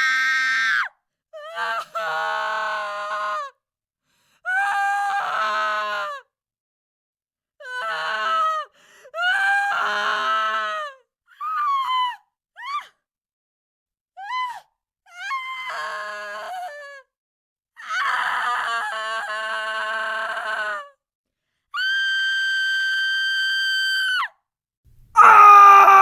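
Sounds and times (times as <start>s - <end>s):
girl screaming in pain: 25.2s - 26.0s
man screaming: 25.2s - 26.0s.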